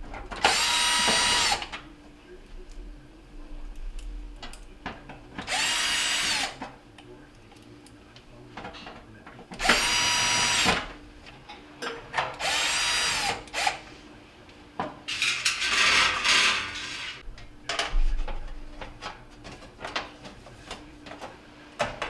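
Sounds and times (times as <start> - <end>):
cordless drill driving screws: 0.5 - 1.7, 5.5 - 6.6, 9.6 - 10.8, 12.4 - 13.8.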